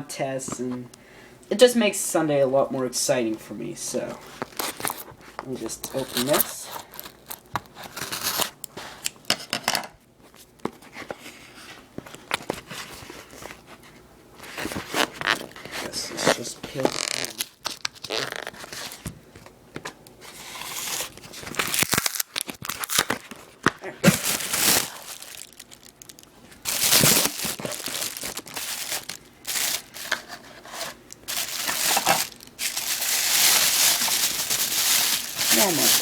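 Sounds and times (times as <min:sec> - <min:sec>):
packing material tearing and crinkling: 0:04.4 - 0:05.1, 0:05.7 - 0:08.6, 0:14.4 - 0:19.0, 0:20.3 - 0:36.0.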